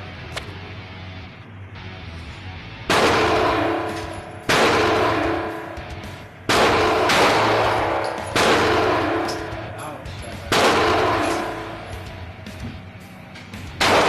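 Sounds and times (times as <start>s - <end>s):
steady low hum: 0.0s - 14.0s
pistol shots echoing: 2.9s - 12.2s, 13.6s - 14.0s.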